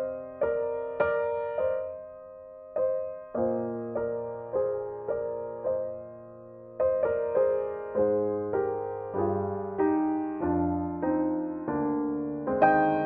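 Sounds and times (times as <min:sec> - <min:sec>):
slow solo piano music: 0:00.0 - 0:13.0.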